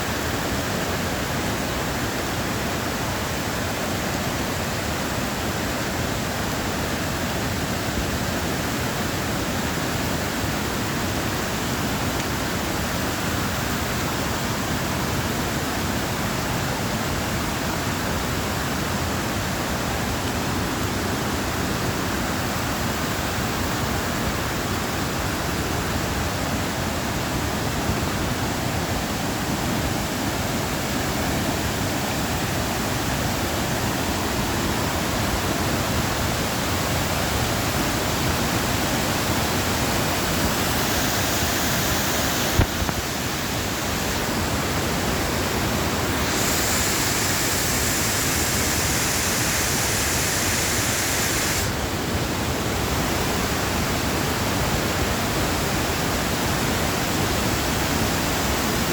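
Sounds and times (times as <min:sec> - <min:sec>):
steady rushing noise: 0:38.6 - 0:53.0.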